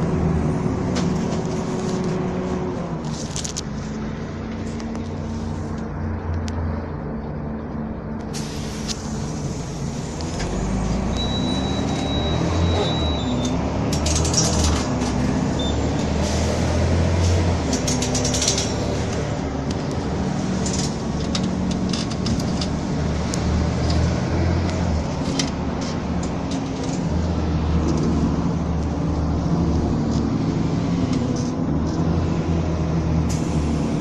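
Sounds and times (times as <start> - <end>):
bus diesel engine running: 0.0 - 34.0
clicks and rattles: 13.9 - 15.2.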